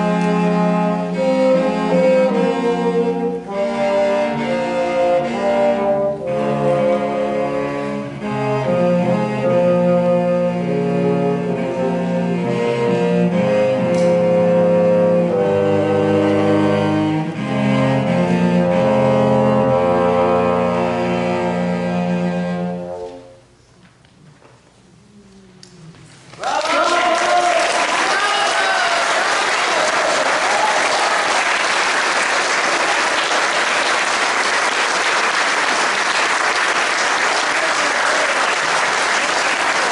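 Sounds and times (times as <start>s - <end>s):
cello: 0.0s - 23.4s
bassoon: 0.0s - 23.5s
audience applauding: 26.3s - 39.9s.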